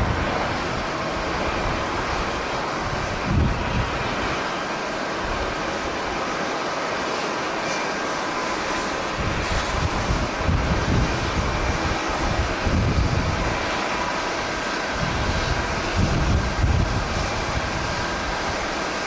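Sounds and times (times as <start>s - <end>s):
wind buffeting microphone: 0.0s - 4.5s, 8.4s - 19.0s
jet engine noise: 0.0s - 19.0s.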